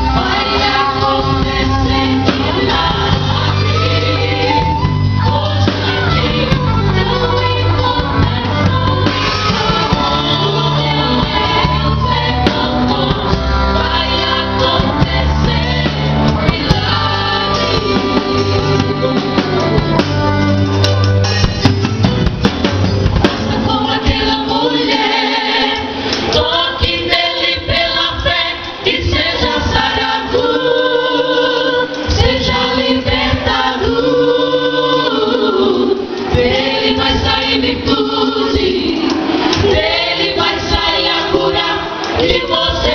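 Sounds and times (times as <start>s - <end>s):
voices singing gospel: 0.0s - 20.7s, 23.2s - 42.9s
band with heavy bass: 0.0s - 28.1s.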